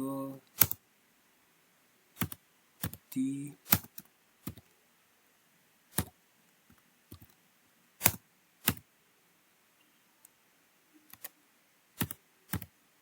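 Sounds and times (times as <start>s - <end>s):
keyboard key clicks: 0.5s - 0.8s, 2.2s - 4.7s, 8.0s - 8.8s, 12.0s - 12.7s.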